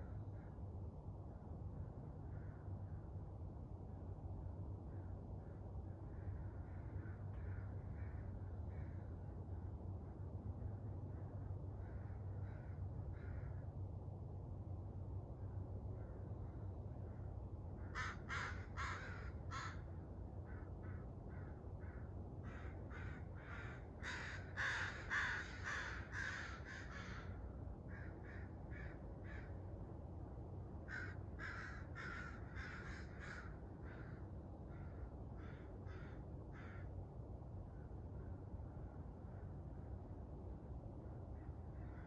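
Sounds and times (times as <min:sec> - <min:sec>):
low background rumble: 0:00.0 - 0:42.0
crows cawing: 0:05.4 - 0:09.1, 0:11.8 - 0:13.6, 0:17.8 - 0:19.9, 0:20.5 - 0:29.6, 0:30.9 - 0:36.9, 0:41.8 - 0:42.0.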